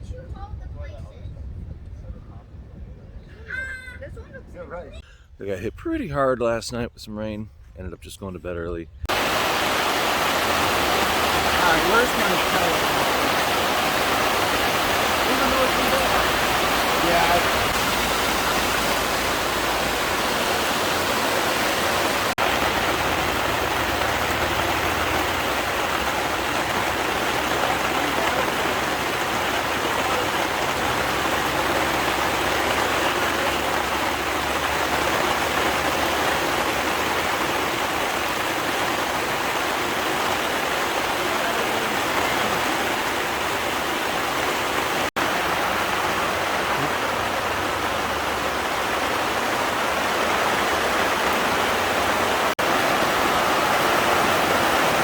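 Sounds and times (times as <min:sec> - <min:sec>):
steady rushing noise: 0:09.1 - 0:27.4.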